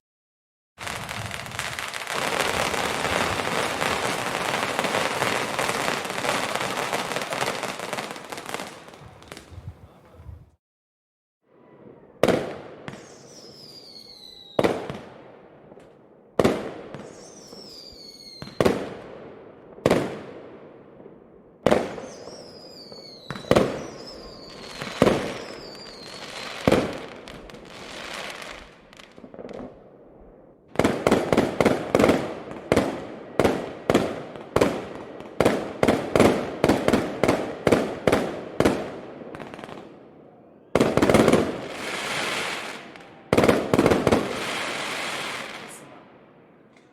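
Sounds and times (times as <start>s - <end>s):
fireworks whistling: 0.8s - 9.6s, 12.2s - 15.0s, 16.5s - 18.9s, 21.7s - 29.3s, 40.8s - 46.0s
fireworks exploding: 0.8s - 10.2s, 11.5s - 46.9s.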